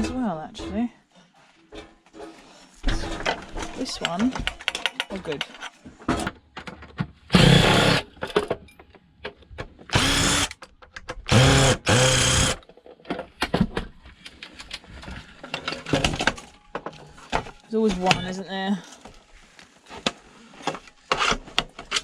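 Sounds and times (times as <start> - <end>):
power drill whining: 7.3 - 8.0, 9.9 - 10.6, 11.3 - 12.6.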